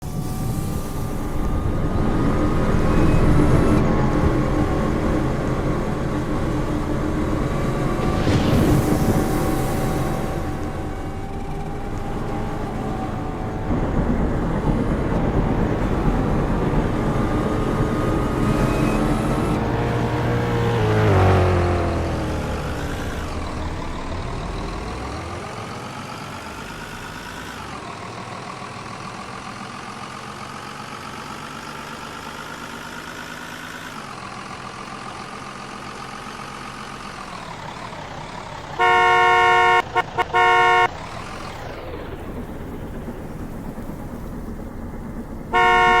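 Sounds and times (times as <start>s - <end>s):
vehicle engine accelerating: 0.0s - 46.0s
horn honking: 38.7s - 41.9s, 45.5s - 46.0s.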